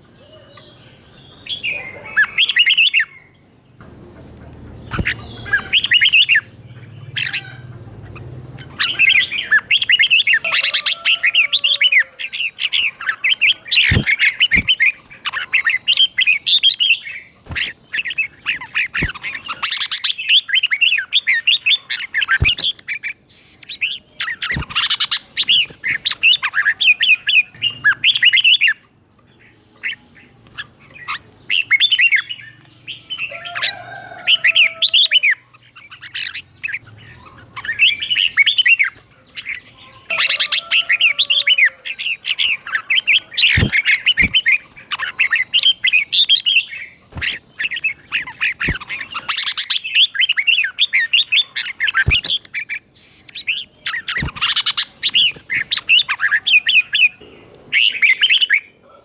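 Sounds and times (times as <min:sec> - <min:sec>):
bird warbling song: 0:00.0 - 0:58.9
sharp bird clicks: 0:03.8 - 0:11.3, 0:12.6 - 0:29.2, 0:36.0 - 0:57.2.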